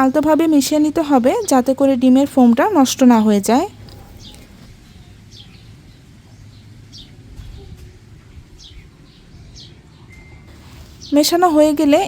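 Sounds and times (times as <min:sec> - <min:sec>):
faint bird chirps: 0:03.7 - 0:11.6.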